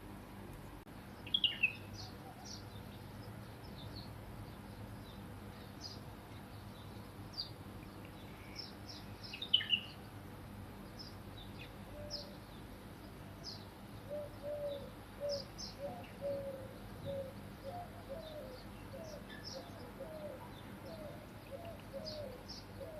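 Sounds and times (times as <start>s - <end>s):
small birds chirping: 0.0s - 22.9s
pigeon cooing: 14.1s - 22.9s.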